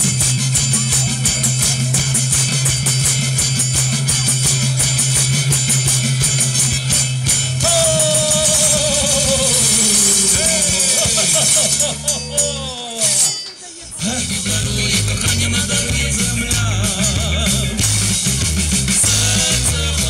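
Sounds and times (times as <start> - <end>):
instrumental music with drum beat: 0.0 - 20.0
sliding melody line: 7.6 - 13.4, 14.0 - 20.0.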